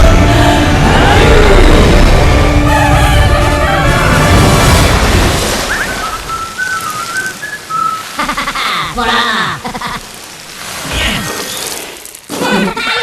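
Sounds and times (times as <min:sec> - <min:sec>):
rain-like hiss: 0:04.8 - 0:12.5
whistled stepped notes: 0:05.6 - 0:08.1.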